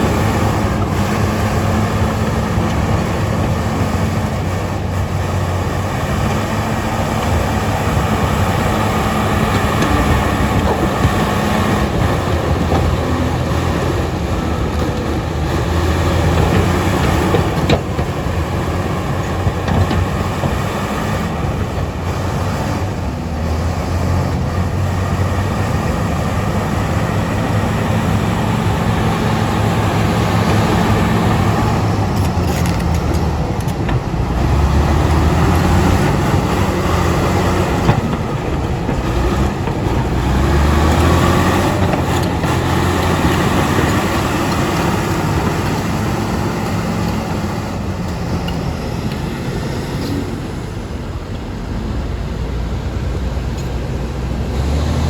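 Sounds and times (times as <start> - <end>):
bulldozer diesel engine under load: 0.0 - 55.0
clatter of spreading stone: 32.2 - 34.0.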